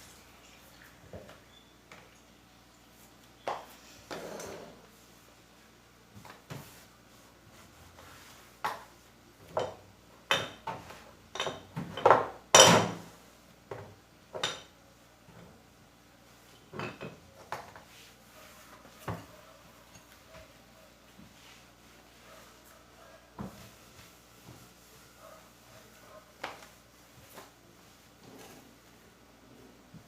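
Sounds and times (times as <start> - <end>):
dishes and cutlery clinking: 9.5 - 13.0.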